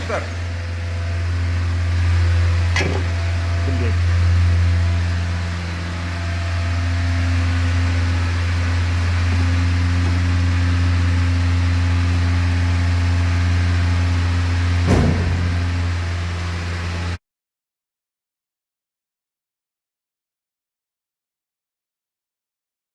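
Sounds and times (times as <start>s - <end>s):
engine humming steadily: 0.0s - 17.2s.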